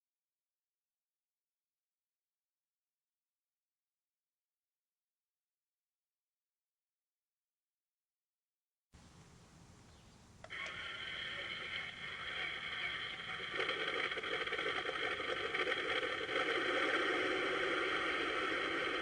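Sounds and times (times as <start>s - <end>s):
simulated tank engine hum: 9.0s - 19.0s
speaker click: 9.8s - 10.8s.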